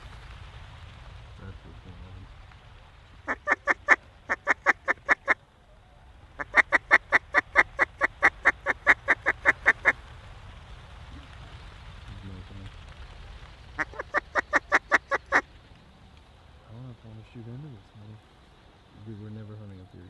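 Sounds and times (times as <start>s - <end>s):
duck call quacks: 3.3s - 5.4s, 6.4s - 10.0s, 13.8s - 15.4s.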